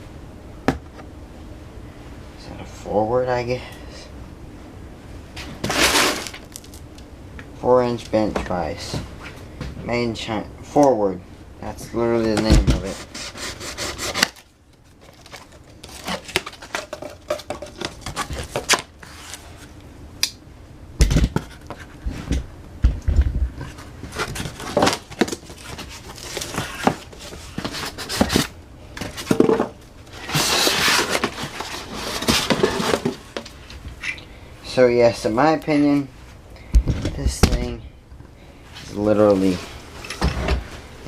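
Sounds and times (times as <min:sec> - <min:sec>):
knocks and thumps of handling: 0:12.3 - 0:13.0, 0:15.0 - 0:18.9, 0:21.0 - 0:34.0, 0:36.8 - 0:37.7, 0:40.0 - 0:40.8
packaging being cut and torn: 0:13.2 - 0:14.5.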